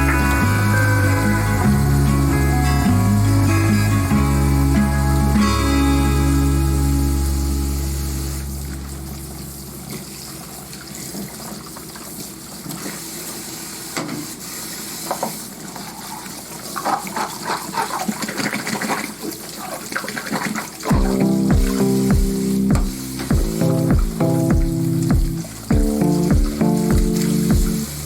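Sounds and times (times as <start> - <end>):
background music: 0.0 - 9.2, 20.9 - 28.0
water running: 0.0 - 28.0.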